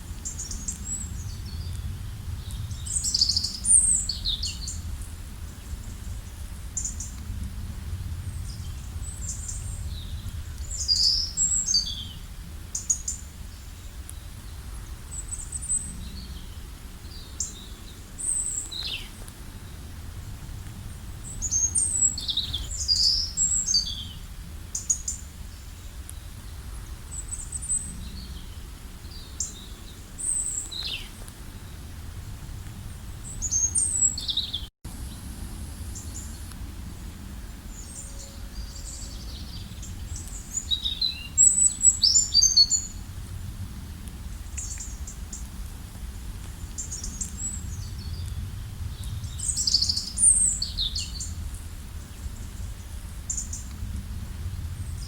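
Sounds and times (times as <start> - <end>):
low steady rumble: 0.0 - 42.0, 42.7 - 55.0
birds chirping and singing: 8.5 - 12.2, 21.2 - 24.2.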